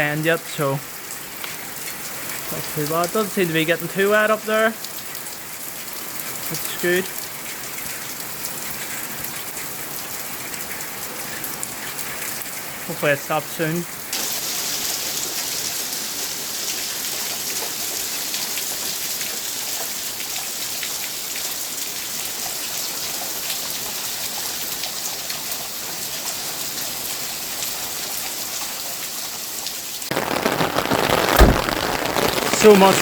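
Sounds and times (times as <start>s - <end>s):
heavy rain hissing: 6.4s - 7.1s, 13.0s - 18.0s, 30.1s - 33.0s.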